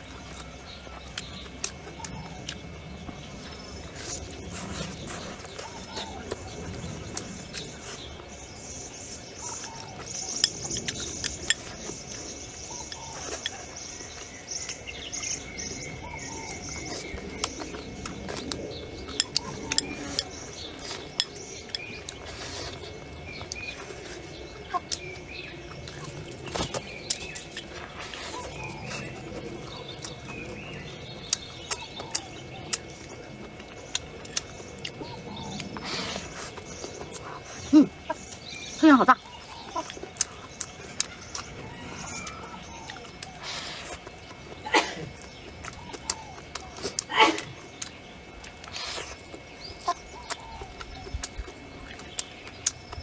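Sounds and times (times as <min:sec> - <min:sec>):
birds chirping: 0:00.0 - 0:53.0
chopsticks clinking against bowls: 0:19.1 - 0:22.8.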